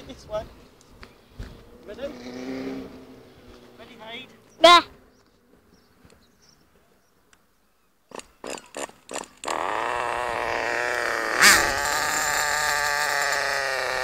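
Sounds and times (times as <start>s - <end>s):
small nitro engine sputtering and buzzing: 8.1s - 14.0s.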